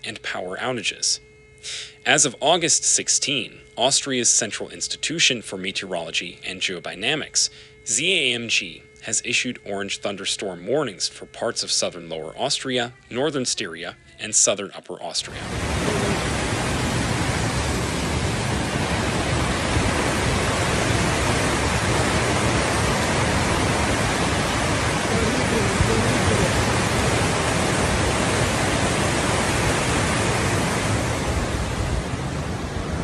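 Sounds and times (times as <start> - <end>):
floodwater rushing: 15.3 - 33.0.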